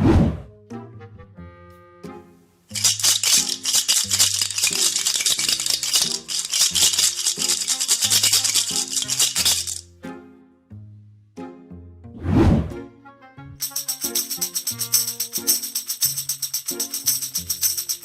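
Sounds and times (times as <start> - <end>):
background music with low melody: 0.0 - 2.8, 9.8 - 14.4
maracas shaken rapidly: 2.7 - 9.8, 13.6 - 18.0.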